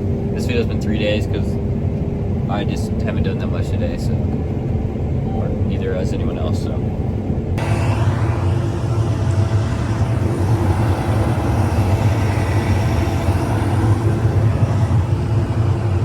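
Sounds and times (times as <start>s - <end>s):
farm machinery engine drone: 7.0s - 16.0s.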